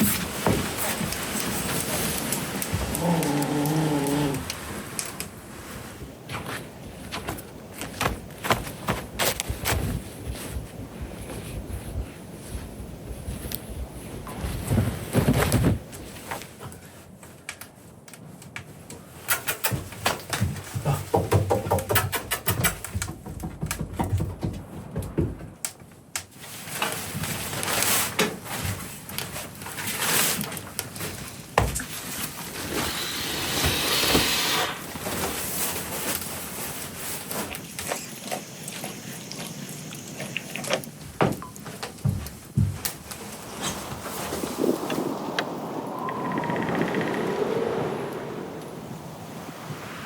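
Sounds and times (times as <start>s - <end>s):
objects knocking and rattling: 19.7s - 25.9s
hiss: 32.2s - 37.6s, 43.4s - 50.0s.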